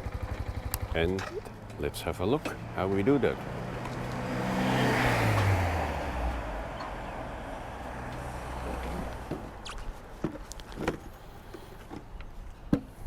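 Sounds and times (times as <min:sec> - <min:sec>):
vehicle passing by: 0:02.6 - 0:09.3.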